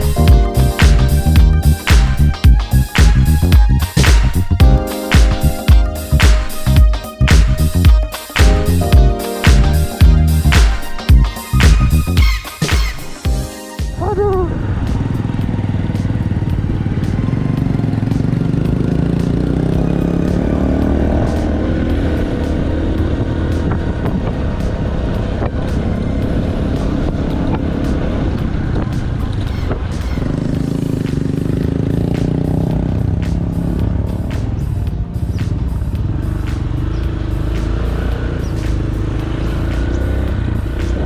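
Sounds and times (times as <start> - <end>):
wind and road noise: 0.0 - 13.3, 13.9 - 41.0
motorcycle engine running: 14.0 - 41.0.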